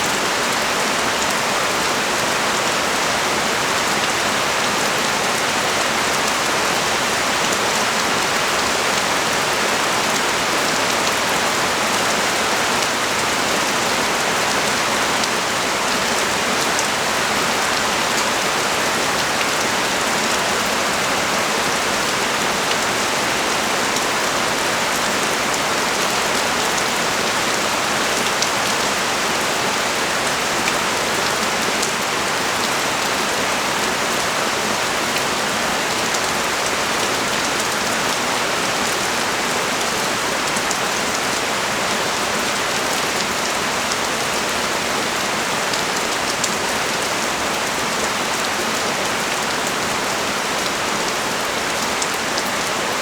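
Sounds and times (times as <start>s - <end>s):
heavy rain on street: 0.0s - 53.0s.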